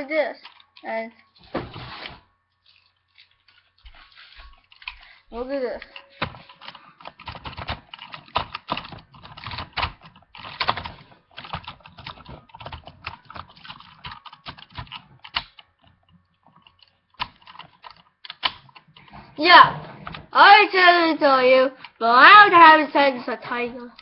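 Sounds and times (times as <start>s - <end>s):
plastic toy parts clicking: 5.8s - 19.0s.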